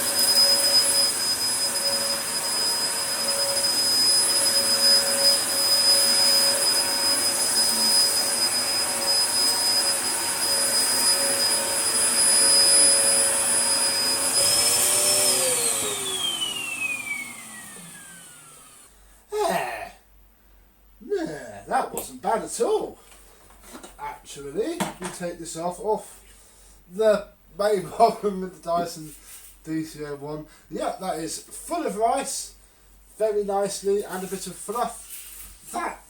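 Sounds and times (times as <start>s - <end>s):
vacuum cleaner motor whine: 0.0s - 18.9s.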